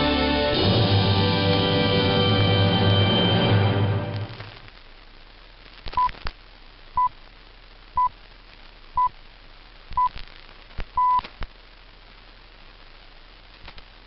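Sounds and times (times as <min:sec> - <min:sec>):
radio static crackle: 0:04.0 - 0:14.0.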